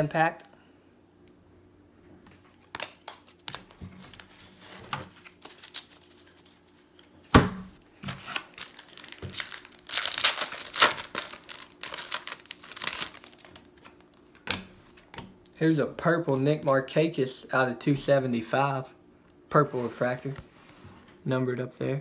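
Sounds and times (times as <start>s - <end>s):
foil wrapper tearing and crinkling: 8.1s - 14.2s.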